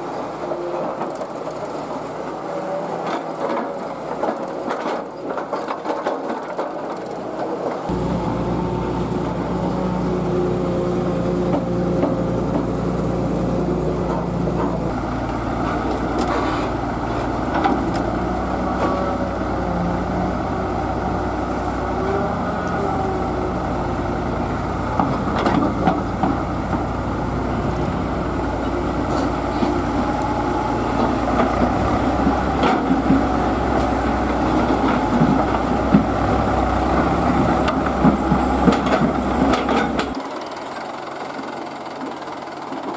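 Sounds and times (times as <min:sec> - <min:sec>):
excavator diesel engine running: 0:00.0 - 0:42.9.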